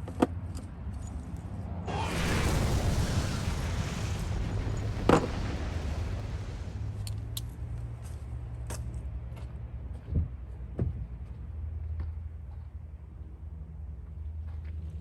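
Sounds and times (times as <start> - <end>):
rushing hiss: 1.9 - 8.0.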